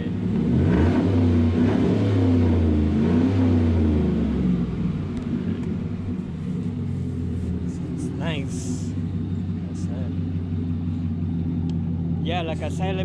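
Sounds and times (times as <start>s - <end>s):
deep rumbling engine exhaust: 0.0s - 13.0s.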